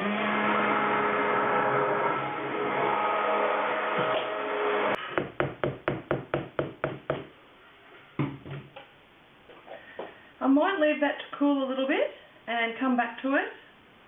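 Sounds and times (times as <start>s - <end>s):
stick blender whirring: 0.0s - 5.2s.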